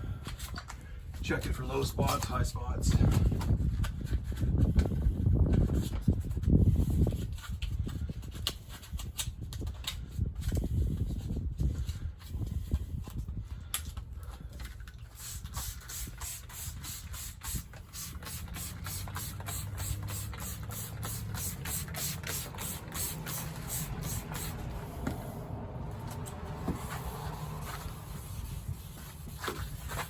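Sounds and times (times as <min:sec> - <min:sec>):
hand rubbing painted panel: 0:15.0 - 0:30.0.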